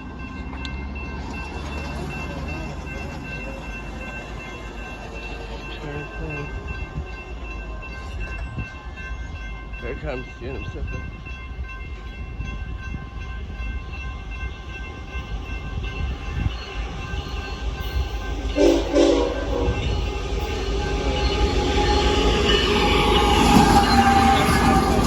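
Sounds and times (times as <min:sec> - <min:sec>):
oncoming train noise: 0:00.0 - 0:25.0
railroad crossing bells ringing: 0:00.0 - 0:25.0
train horn blasts: 0:18.5 - 0:25.0.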